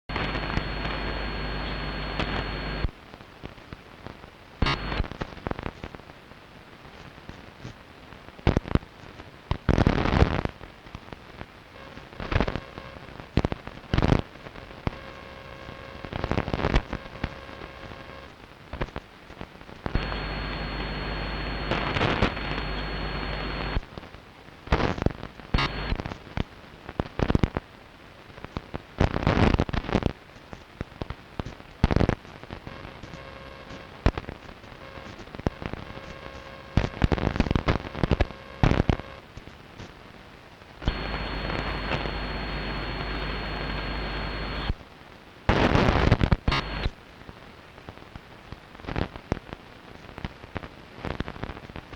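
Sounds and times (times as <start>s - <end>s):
radio interference with whistle: 0.1s - 2.9s, 4.6s - 5.0s, 19.9s - 23.8s, 25.6s - 26.0s, 40.8s - 44.8s, 45.6s - 46.9s
radio static crackling: 0.1s - 51.9s.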